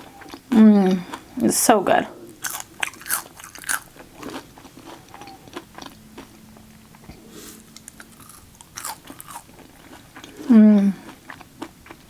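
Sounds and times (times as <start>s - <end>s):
person chewing food: 2.3s - 10.5s.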